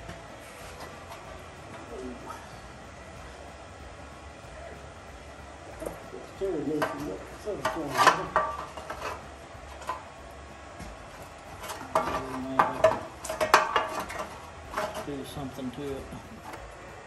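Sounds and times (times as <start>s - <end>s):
metal tools clinking and scraping: 6.6s - 10.0s, 11.6s - 16.2s.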